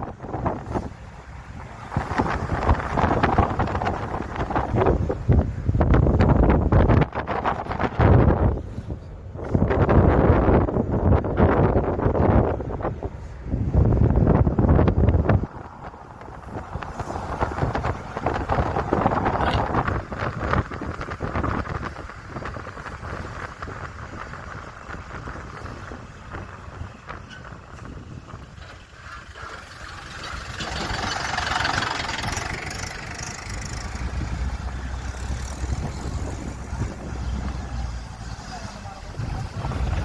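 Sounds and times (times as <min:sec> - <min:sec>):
road rumble: 0:00.0 - 0:40.0
car engine running: 0:28.8 - 0:37.6.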